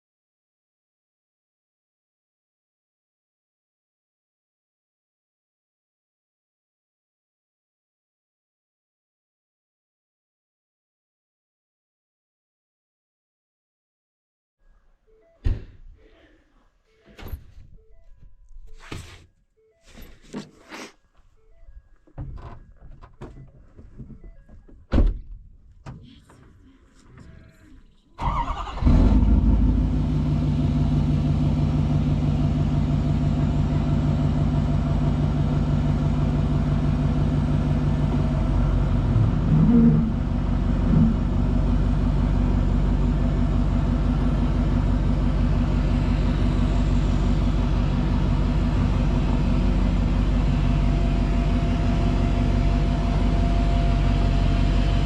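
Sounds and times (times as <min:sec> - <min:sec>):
vehicle engine starting and running: 0:28.2 - 0:55.0.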